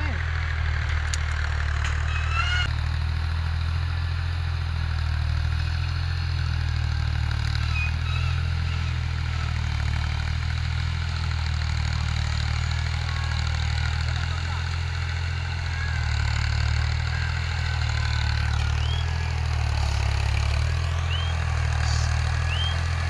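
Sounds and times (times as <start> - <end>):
engine idling: 0.0 - 23.0
faint high chirp: 18.8 - 19.2, 21.0 - 22.9.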